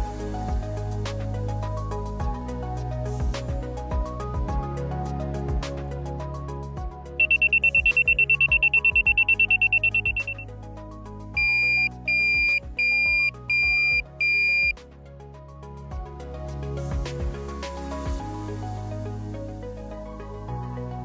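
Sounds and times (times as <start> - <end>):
background music: 0.0 - 21.0
high-pitched buzzer beeps: 7.2 - 10.4, 11.4 - 14.7.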